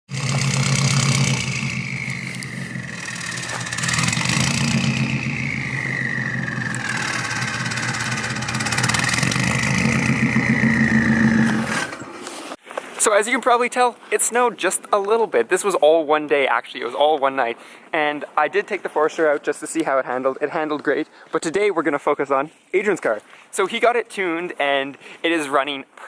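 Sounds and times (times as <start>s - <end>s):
car engine revving: 0.1s - 12.2s.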